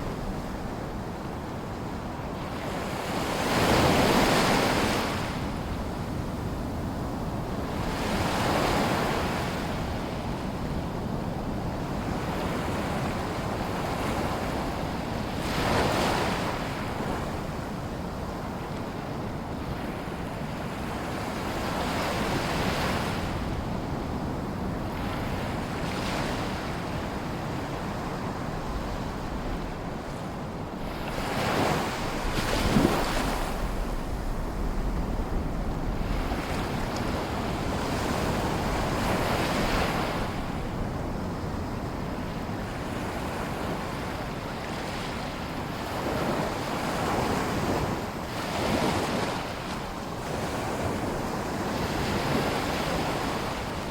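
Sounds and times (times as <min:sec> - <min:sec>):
wind rumble on microphone: 0:00.0 - 0:53.9
small waves lapping ashore: 0:30.8 - 0:35.1.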